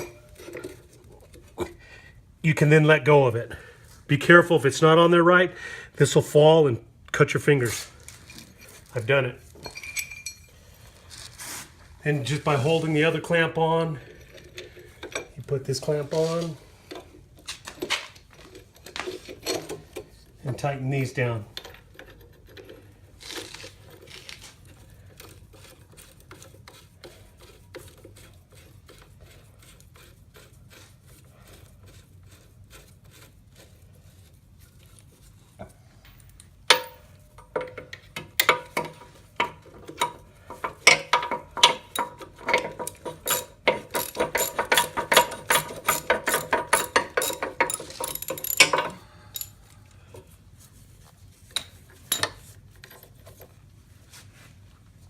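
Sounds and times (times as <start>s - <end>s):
ratchet wrench clicking: 40.8s - 49.5s.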